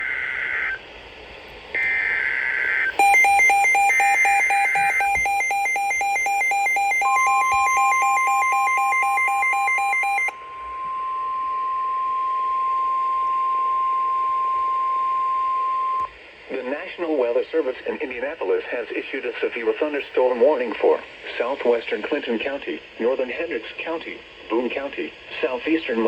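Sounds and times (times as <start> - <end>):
warbling data bursts: 2.7 - 10.3
steady warning alarm tone: 2.7 - 16.0
electronic alarm beeping rapidly: 2.9 - 10.3.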